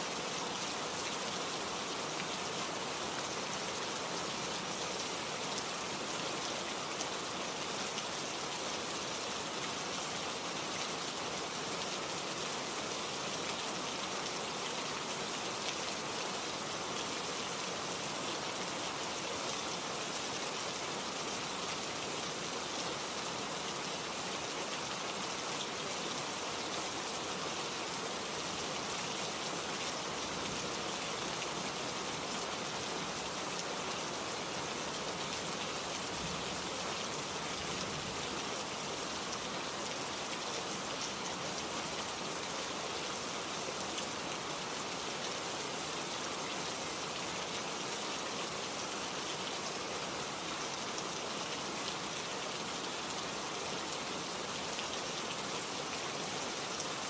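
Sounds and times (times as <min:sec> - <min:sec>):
steady rainfall: 0:00.0 - 0:57.0.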